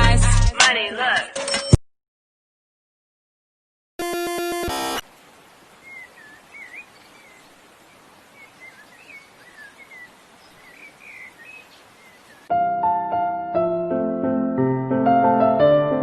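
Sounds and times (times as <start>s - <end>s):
faint steady hiss: 4.7s - 12.5s.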